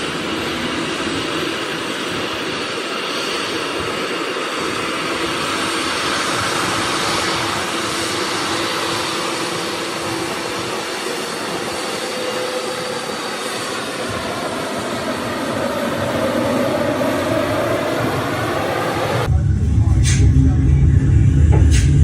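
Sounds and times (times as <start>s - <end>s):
aircraft engine and airflow: 0.0s - 22.0s.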